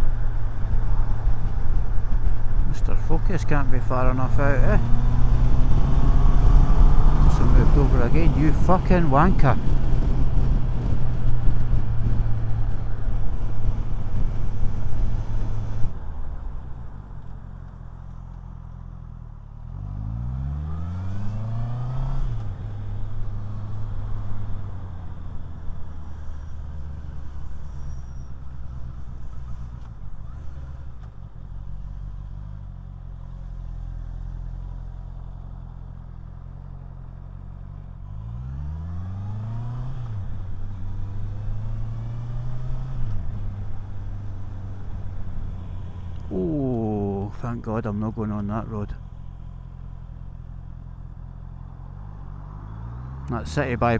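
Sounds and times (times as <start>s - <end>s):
motorcycle engine revving: 0.0s - 15.9s.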